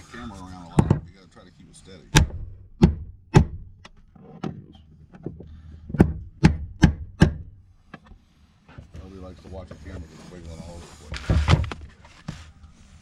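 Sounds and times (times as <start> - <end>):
sharp knocks on metal: 2.2 - 4.0, 5.9 - 7.6.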